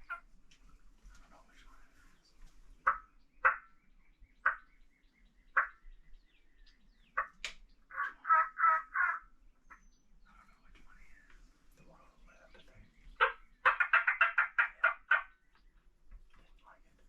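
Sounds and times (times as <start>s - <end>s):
turkey clucking and yelping: 0.0s - 0.3s, 2.8s - 3.8s, 7.1s - 9.7s, 13.1s - 15.6s.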